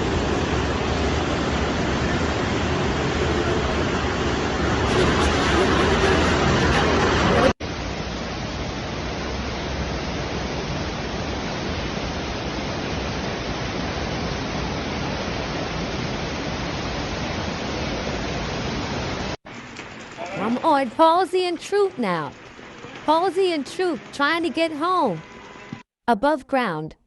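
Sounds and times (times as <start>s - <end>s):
steady rushing noise: 0.0s - 25.8s.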